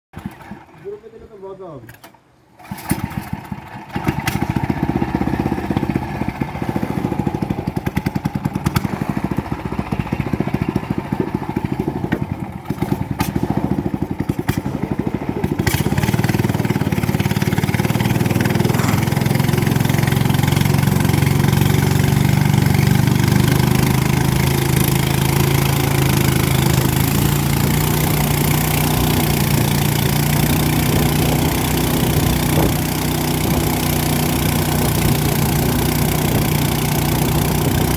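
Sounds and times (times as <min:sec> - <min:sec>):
boat engine chugging: 0:02.6 - 0:37.9.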